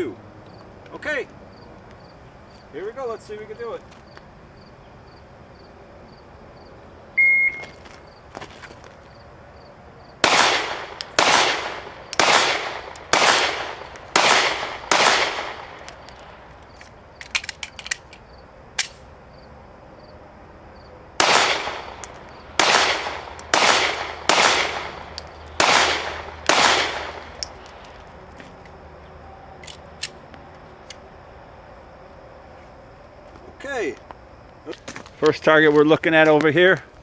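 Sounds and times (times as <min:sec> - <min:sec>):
pistol shots: 0:10.2 - 0:16.0, 0:21.2 - 0:27.4
magazine reload clicks: 0:16.8 - 0:18.2, 0:18.8 - 0:19.0, 0:29.6 - 0:30.2.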